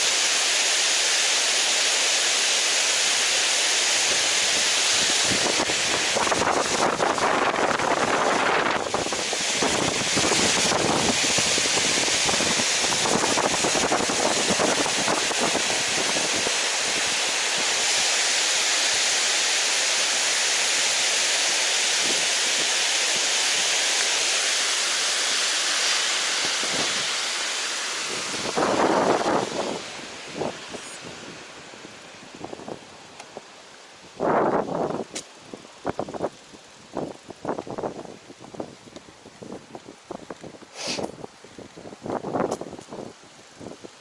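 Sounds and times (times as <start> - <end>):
rushing water: 0.0 - 44.0
wind buffeting microphone: 4.4 - 17.9, 26.4 - 27.2, 28.0 - 33.5, 34.1 - 44.0.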